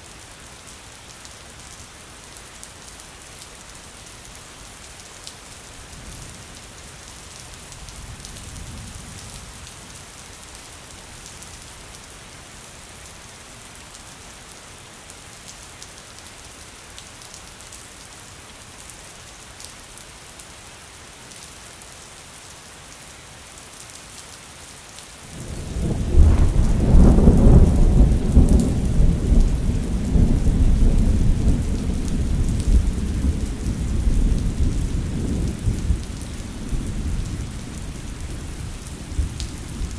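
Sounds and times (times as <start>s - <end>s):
steady rain falling: 0.0s - 39.9s
loud thunder rumbling: 25.4s - 37.4s.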